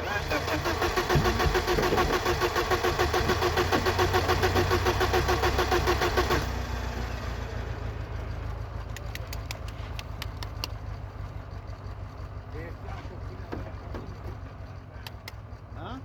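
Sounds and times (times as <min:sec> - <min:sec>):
starter cranking engine: 0:00.0 - 0:07.3.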